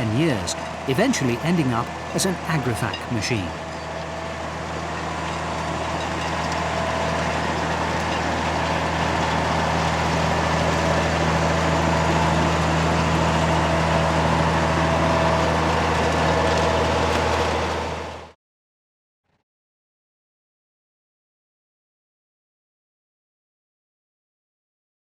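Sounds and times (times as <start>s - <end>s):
diesel engine humming: 0.0s - 18.3s.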